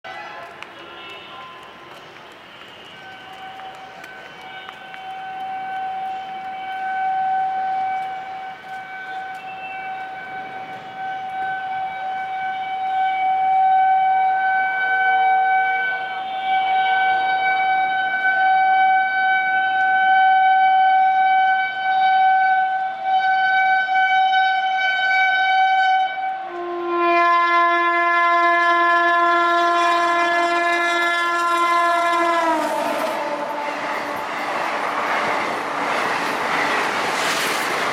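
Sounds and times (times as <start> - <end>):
locomotive horn blast: 0.1 - 36.8
train rushing past: 29.3 - 37.9.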